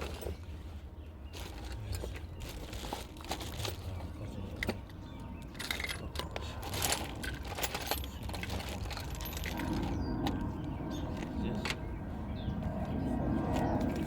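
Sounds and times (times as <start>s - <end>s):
low steady rumble: 0.0s - 14.0s
metal clinks and knocks: 1.4s - 10.4s.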